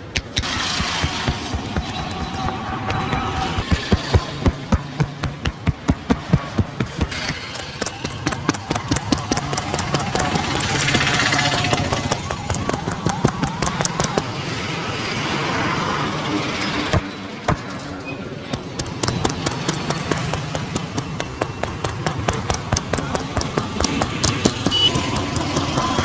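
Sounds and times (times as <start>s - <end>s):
hands slapping and tapping skin: 1.0s - 14.3s.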